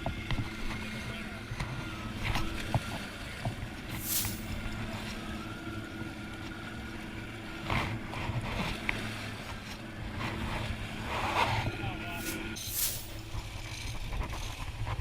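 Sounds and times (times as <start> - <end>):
boat engine humming: 0.0 - 15.0
water noise: 0.0 - 15.0
brief whooshes: 12.2 - 13.3.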